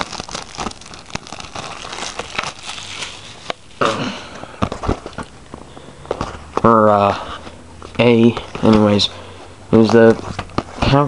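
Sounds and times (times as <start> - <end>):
box clicks and crinkling: 0.0 - 3.6, 4.6 - 6.7, 9.8 - 11.0
box rustling: 0.0 - 3.6, 4.6 - 6.7, 9.8 - 11.0.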